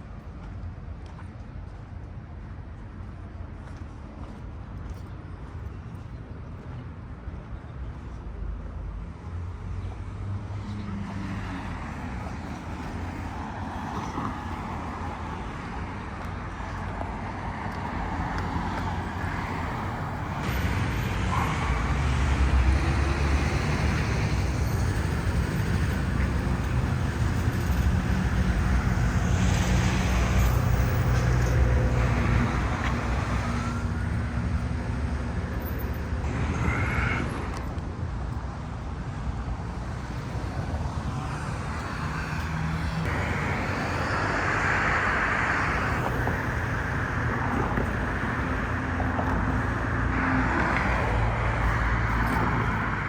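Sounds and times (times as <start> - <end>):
cars driving past: 9.4 - 53.0.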